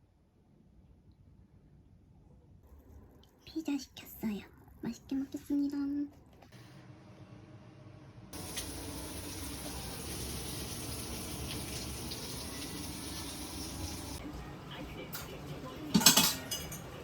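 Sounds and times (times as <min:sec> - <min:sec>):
water running from a tap: 0:08.4 - 0:14.2
dishes clinking: 0:15.1 - 0:17.0.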